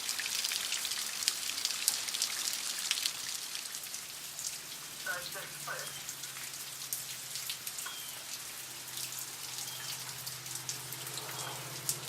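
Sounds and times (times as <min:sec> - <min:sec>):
rain hissing: 0:00.0 - 0:12.0
raindrops clicking on a surface: 0:00.0 - 0:12.0.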